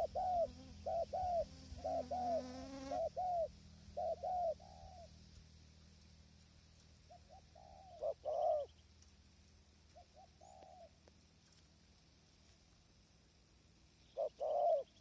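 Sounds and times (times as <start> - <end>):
dove cooing: 0.0 - 5.2, 7.1 - 8.7, 10.0 - 11.0, 14.1 - 15.0.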